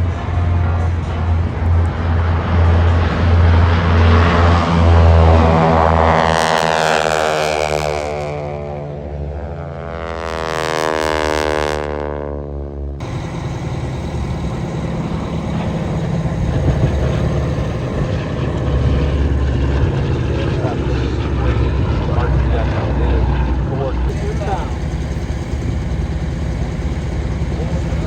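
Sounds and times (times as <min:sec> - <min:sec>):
propeller airplane flying past: 0:00.0 - 0:28.0
rough steady engine: 0:13.0 - 0:28.0.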